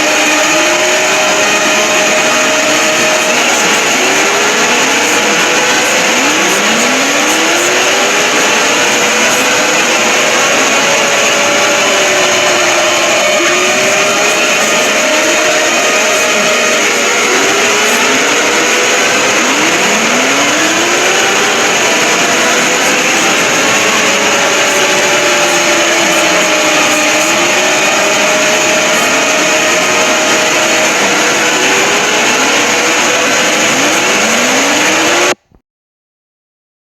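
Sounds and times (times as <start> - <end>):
steady alarm tones: 0.0 - 35.4
sweeping siren tones: 0.0 - 35.4
harsh noise: 0.0 - 35.6.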